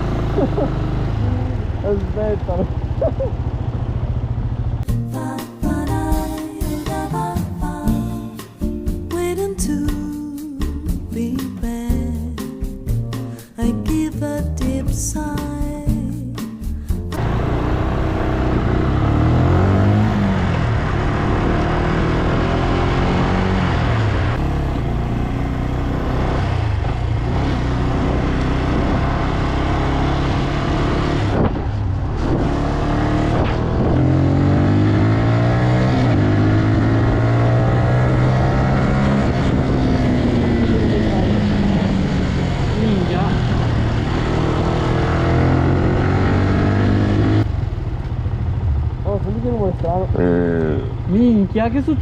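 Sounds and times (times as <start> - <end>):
vehicle engine revving through gears: 17.1 - 47.5.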